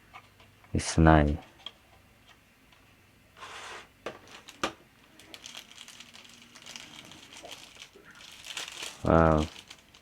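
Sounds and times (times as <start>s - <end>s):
packaging rustling: 3.5s - 10.0s
light crinkling and ticking: 4.3s - 10.0s.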